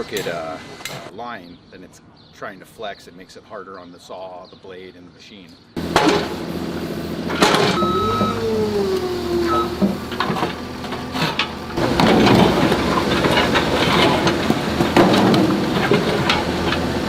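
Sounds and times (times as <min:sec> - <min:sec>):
knocks and clatter: 0:05.8 - 0:06.4, 0:07.3 - 0:08.4, 0:09.7 - 0:17.0
heavy machinery engine drone: 0:05.8 - 0:17.0.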